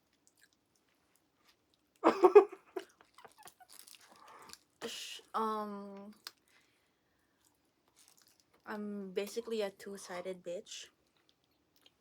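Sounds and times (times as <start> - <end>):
chewing clicks and smacks: 0.0 - 2.0, 6.1 - 6.5, 7.4 - 8.6, 11.0 - 12.0.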